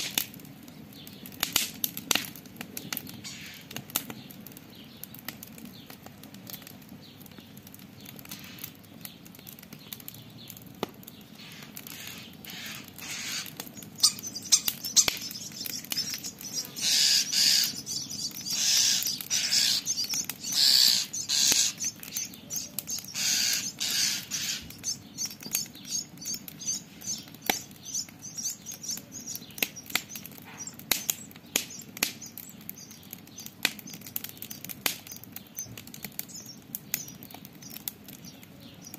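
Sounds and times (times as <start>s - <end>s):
campfire crackling and popping: 0.0s - 38.9s
starling harsh calls: 3.2s - 3.7s, 11.4s - 32.9s.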